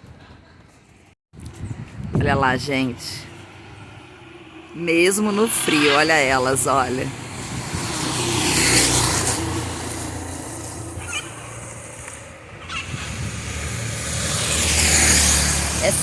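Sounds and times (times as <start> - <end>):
tyres hissing on wet street: 7.2 - 16.0.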